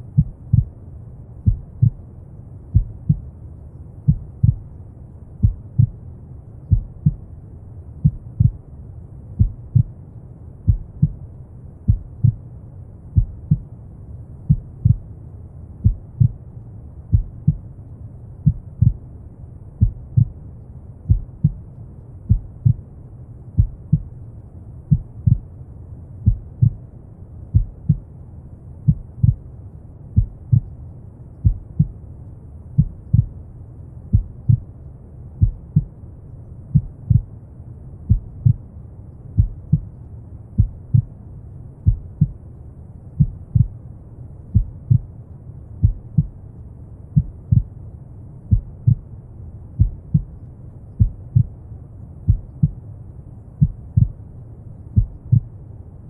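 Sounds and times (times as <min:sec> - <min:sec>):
low rumble of brown noise: 0:00.0 - 0:56.0
heartbeat thumping: 0:00.1 - 0:00.8, 0:01.4 - 0:02.0, 0:02.7 - 0:03.3, 0:04.1 - 0:04.7, 0:05.4 - 0:06.0, 0:06.7 - 0:07.2, 0:08.0 - 0:08.6, 0:09.4 - 0:09.9, 0:10.7 - 0:11.2, 0:11.9 - 0:12.4, 0:13.2 - 0:13.6, 0:14.5 - 0:15.0, 0:15.8 - 0:16.4, 0:17.1 - 0:17.6, 0:18.4 - 0:19.0, 0:19.8 - 0:20.4, 0:21.1 - 0:21.6, 0:22.3 - 0:22.8, 0:23.6 - 0:24.1, 0:24.9 - 0:25.4, 0:26.2 - 0:26.8, 0:27.5 - 0:28.1, 0:28.9 - 0:29.4, 0:30.2 - 0:30.7, 0:31.4 - 0:32.0, 0:32.8 - 0:33.3, 0:34.1 - 0:34.6, 0:35.4 - 0:35.9, 0:36.7 - 0:37.3, 0:38.1 - 0:38.6, 0:39.4 - 0:39.9, 0:40.6 - 0:41.1, 0:41.8 - 0:42.4, 0:43.2 - 0:43.8, 0:44.5 - 0:45.1, 0:45.8 - 0:46.3, 0:47.2 - 0:47.8, 0:48.5 - 0:49.0, 0:49.8 - 0:50.3, 0:51.0 - 0:51.5, 0:52.3 - 0:52.8, 0:53.6 - 0:54.2, 0:55.0 - 0:55.5.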